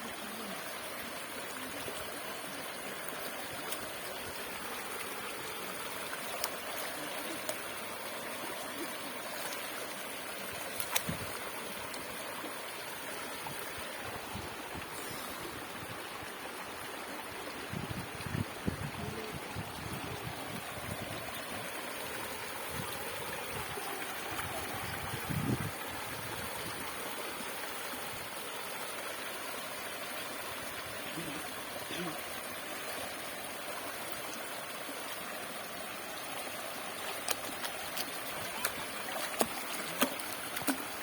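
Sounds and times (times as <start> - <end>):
waterfall rushing over rocks: 27.8 - 41.0.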